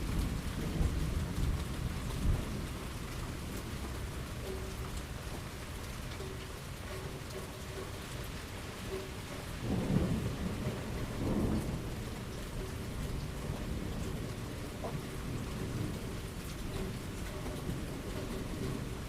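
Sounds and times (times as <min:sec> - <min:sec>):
thunder rumbling: 0:00.0 - 0:04.9, 0:09.6 - 0:19.0
steady rain falling: 0:00.0 - 0:19.0.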